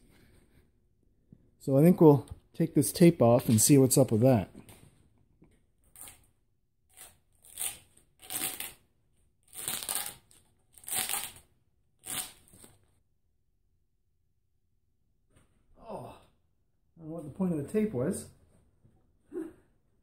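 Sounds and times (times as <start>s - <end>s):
tape being ripped off: 6.9s - 8.8s, 9.5s - 12.8s.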